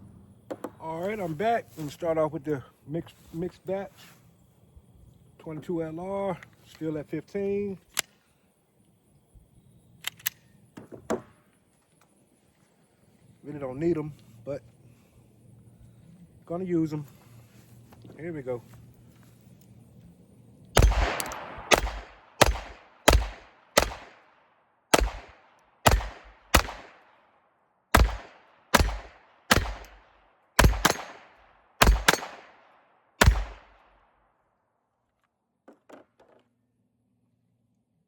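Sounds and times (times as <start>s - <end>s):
pistol shots: 20.8s - 24.3s, 24.9s - 27.1s, 27.9s - 34.0s.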